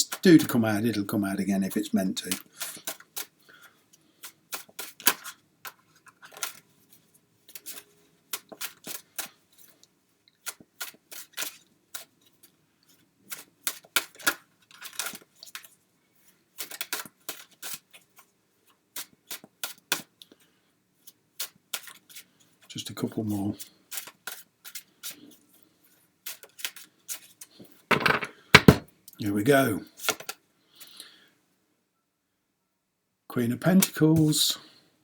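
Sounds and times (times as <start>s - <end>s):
cards being shuffled: 1.7s - 3.3s, 7.4s - 9.3s, 13.3s - 18.3s.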